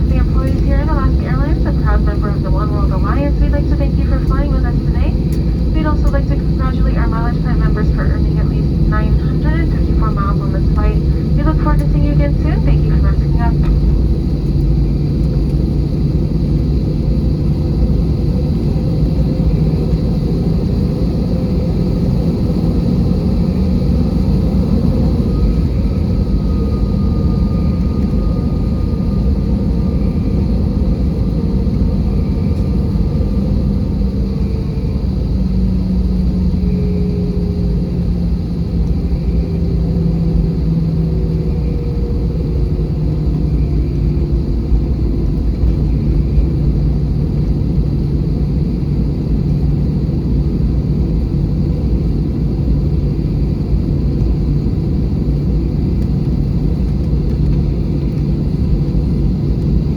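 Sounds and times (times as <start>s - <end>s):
airplane cabin engine rumble: 0.0s - 59.9s.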